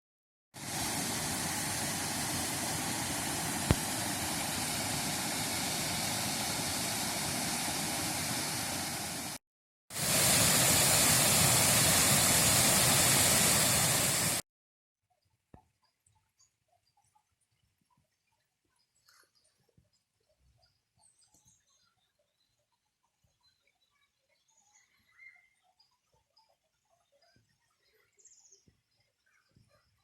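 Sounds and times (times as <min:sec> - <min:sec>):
steady rushing noise: 0:00.6 - 0:09.4, 0:10.0 - 0:14.4.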